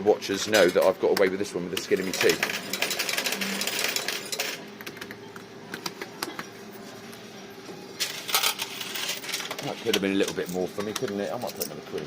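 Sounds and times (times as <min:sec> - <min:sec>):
fruit machine clicking and rattling: 0:00.3 - 0:05.1, 0:08.3 - 0:12.0.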